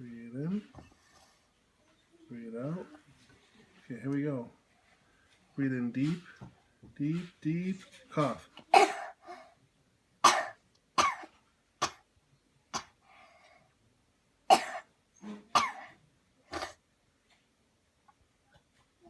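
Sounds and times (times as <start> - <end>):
person coughing: 8.7 - 9.3, 10.3 - 12.0, 14.5 - 14.9, 15.6 - 16.8.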